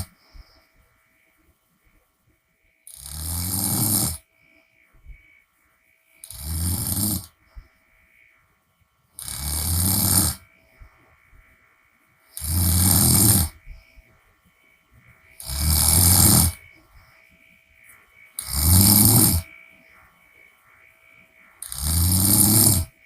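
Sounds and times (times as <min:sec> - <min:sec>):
quiet breathing: 0:00.0 - 0:23.0
woman snoring: 0:02.9 - 0:04.3, 0:06.2 - 0:07.4, 0:09.2 - 0:10.5, 0:12.4 - 0:13.6, 0:15.4 - 0:16.6, 0:18.4 - 0:19.6, 0:21.6 - 0:23.0.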